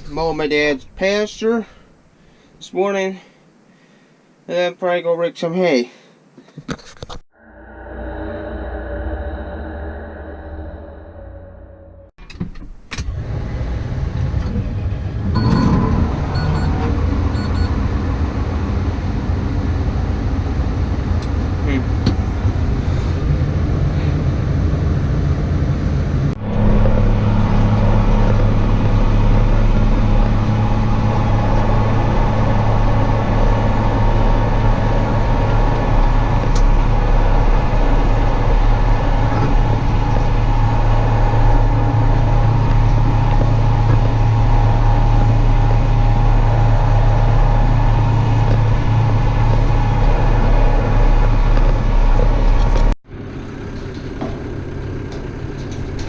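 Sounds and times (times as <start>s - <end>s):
vehicle engine under load: 12.2s - 56.0s.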